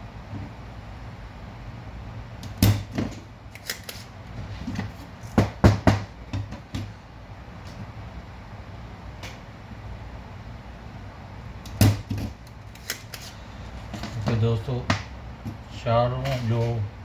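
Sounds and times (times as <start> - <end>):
low steady hum: 0.0 - 17.0.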